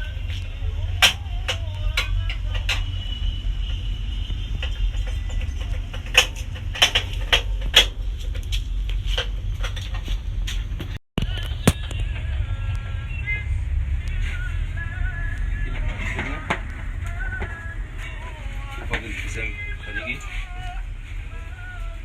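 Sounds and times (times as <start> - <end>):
low steady rumble: 0.0 - 22.0
metallic clicks and knocks: 4.5 - 11.0.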